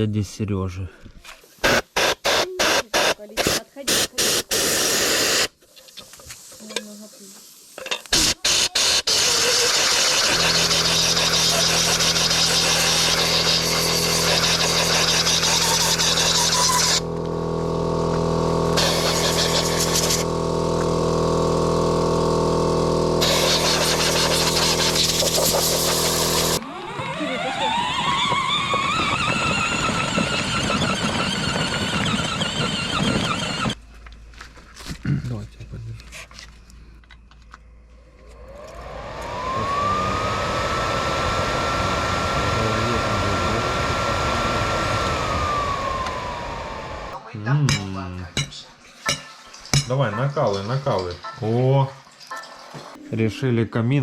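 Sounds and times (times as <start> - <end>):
air compressor motor humming: 1.6 - 5.5, 8.1 - 33.8, 37.8 - 47.2
air blow gun hissing: 1.6 - 5.6, 6.2 - 17.2, 18.6 - 26.6, 38.6 - 47.2
fan whining: 8.2 - 34.2, 36.3 - 47.4.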